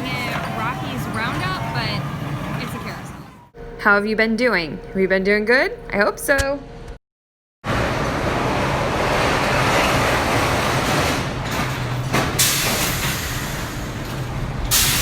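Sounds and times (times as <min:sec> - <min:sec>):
roller coaster train on steel track: 0:00.0 - 0:03.6, 0:07.7 - 0:15.0
brakes hissing: 0:12.3 - 0:15.0.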